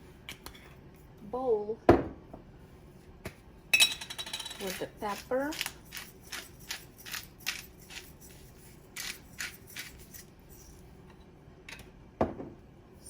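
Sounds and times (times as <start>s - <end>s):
pepper mill grinding: 4.2s - 10.8s.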